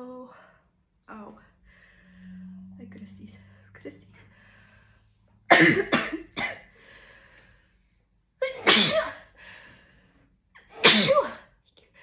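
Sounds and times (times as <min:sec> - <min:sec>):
woman sneezing: 0:08.4 - 0:09.2, 0:10.7 - 0:11.4.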